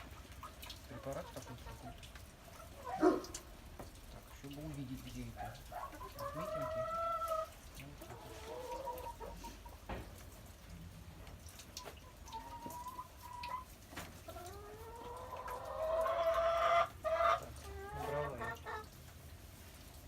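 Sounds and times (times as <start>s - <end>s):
chickens calling: 0.0s - 10.0s, 11.6s - 19.0s.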